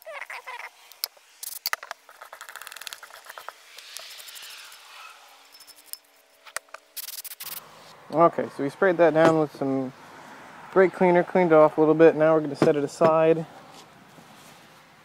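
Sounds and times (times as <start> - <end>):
brush scrubbing metal parts: 0.9 - 7.6
aerosol spray hissing: 3.0 - 5.4, 7.0 - 7.6.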